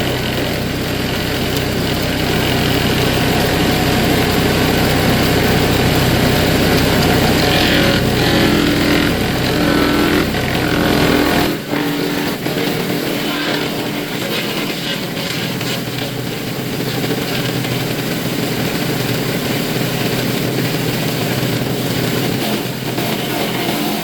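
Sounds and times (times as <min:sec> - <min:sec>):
wood chipper engine drone: 0:00.0 - 0:24.0.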